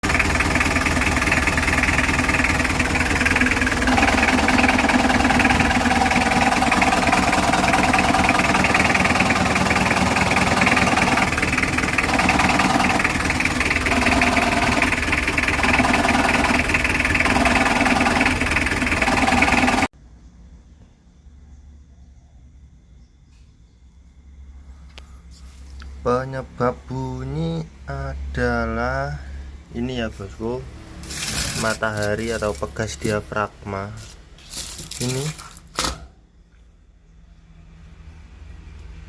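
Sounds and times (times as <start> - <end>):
car engine idling: 0.0 - 19.9, 26.6 - 35.8
clutch growling: 0.0 - 19.9.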